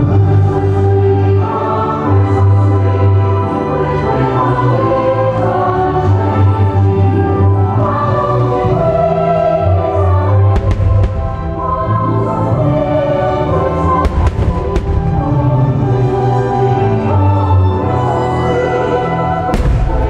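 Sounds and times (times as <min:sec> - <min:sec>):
choral and orchestral music: 0:00.0 - 0:20.0
firework bursts cracking: 0:10.6 - 0:11.6, 0:14.1 - 0:15.4, 0:19.6 - 0:20.0.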